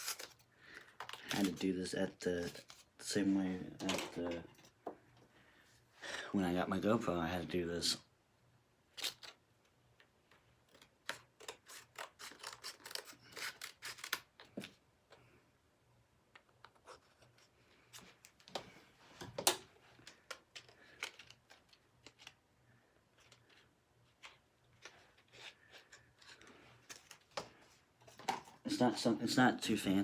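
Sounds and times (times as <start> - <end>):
packaging crinkling and rustling: 0.0 - 1.8, 10.7 - 14.7.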